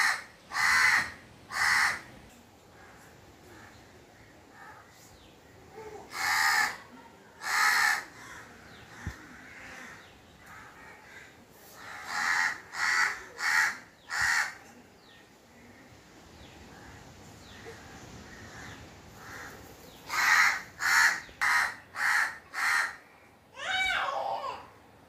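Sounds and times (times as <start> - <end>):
crow cawing: 0.0 - 2.1, 6.1 - 6.8, 7.4 - 14.6, 18.3 - 23.0.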